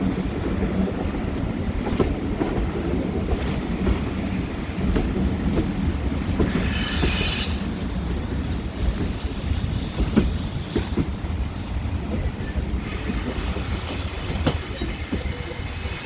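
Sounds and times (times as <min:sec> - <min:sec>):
train rumbling on rails: 0:00.0 - 0:16.0
high squeal: 0:06.3 - 0:07.8.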